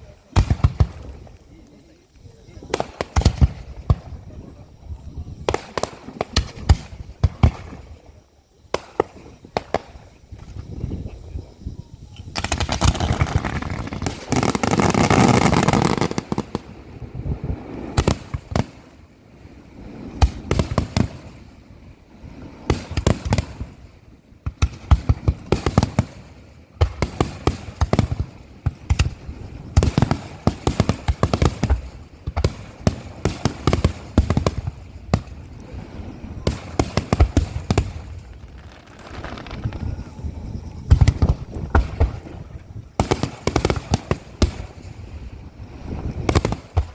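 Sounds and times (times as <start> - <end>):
fireworks bangs: 0.3 - 1.3, 2.6 - 4.6, 12.3 - 19.1, 19.8 - 21.6, 22.6 - 46.9.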